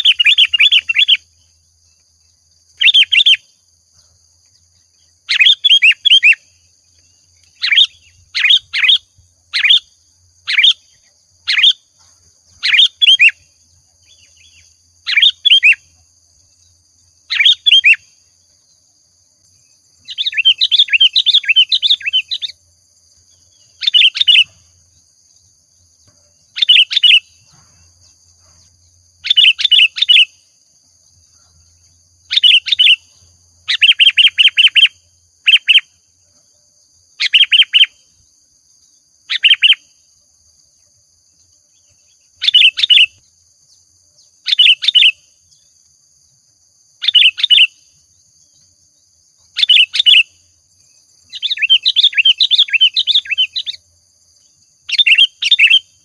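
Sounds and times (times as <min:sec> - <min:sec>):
bird chattering: 0:00.0 - 0:01.2, 0:05.3 - 0:06.4, 0:07.6 - 0:09.9
bird singing whistled notes: 0:00.0 - 0:11.9, 0:12.5 - 0:18.8, 0:19.5 - 0:22.6, 0:23.2 - 0:25.0, 0:26.3 - 0:30.6, 0:31.2 - 0:36.1, 0:37.2 - 0:40.1, 0:41.7 - 0:45.8, 0:47.0 - 0:48.8, 0:49.4 - 0:56.0.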